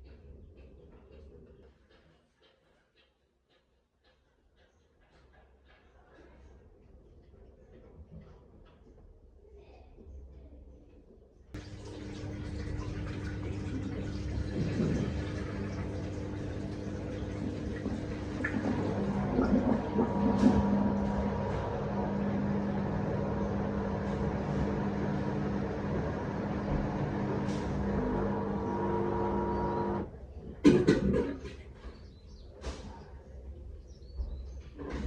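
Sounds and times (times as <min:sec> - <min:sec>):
water sloshing: 0:11.6 - 0:30.0
washing machine motor hum: 0:11.6 - 0:31.5.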